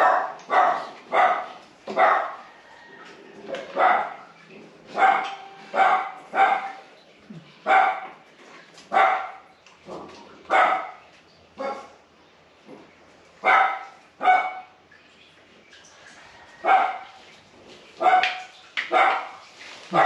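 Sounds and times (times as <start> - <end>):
dog barking: 0.0 - 2.4, 3.6 - 4.3, 4.9 - 6.8, 7.6 - 8.1, 8.9 - 9.5, 10.5 - 11.0, 11.6 - 12.0, 13.4 - 14.7, 16.6 - 17.1, 18.0 - 20.0.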